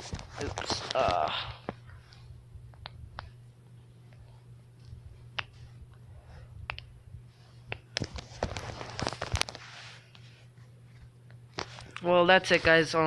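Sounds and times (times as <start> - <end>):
knuckles cracking: 0.8 - 3.4, 6.6 - 6.9.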